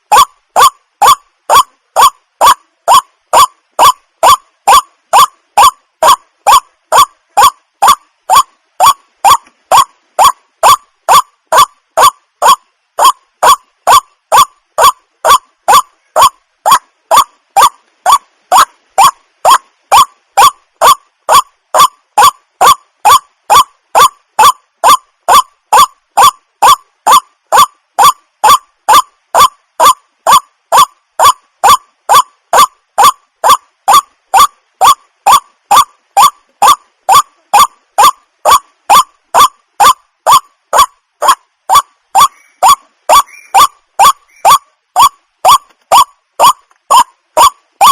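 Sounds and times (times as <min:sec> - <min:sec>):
waterhen calling wak: 0:33.0 - 0:47.9.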